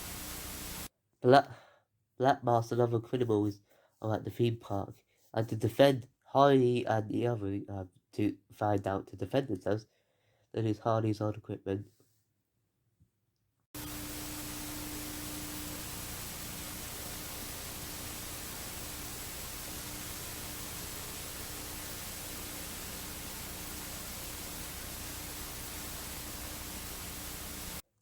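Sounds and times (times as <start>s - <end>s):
static hiss: 0.0s - 0.9s, 13.8s - 27.8s.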